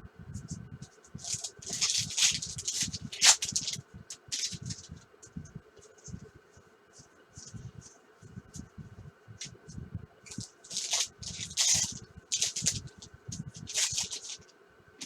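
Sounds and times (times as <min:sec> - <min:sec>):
cards and wrappers rustling: 0:01.2 - 0:06.2, 0:07.0 - 0:07.9, 0:10.3 - 0:14.5.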